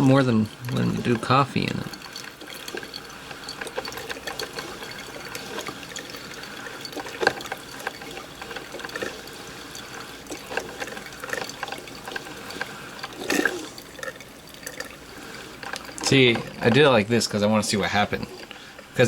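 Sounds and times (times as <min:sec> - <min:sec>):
liquid streaming into pot: 0:00.0 - 0:19.0
small drips and pops: 0:00.0 - 0:19.0.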